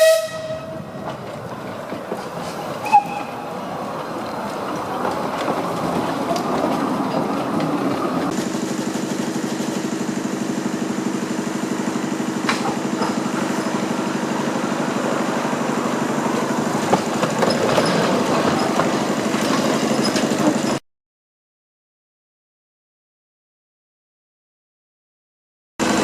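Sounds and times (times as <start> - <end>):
diesel locomotive engine running: 0.0 - 20.8, 25.8 - 26.0.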